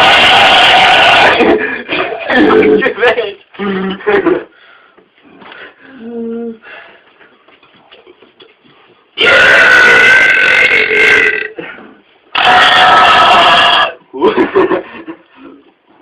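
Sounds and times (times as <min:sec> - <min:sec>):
man belching loudly: 0:09.2 - 0:11.6, 0:12.4 - 0:14.0.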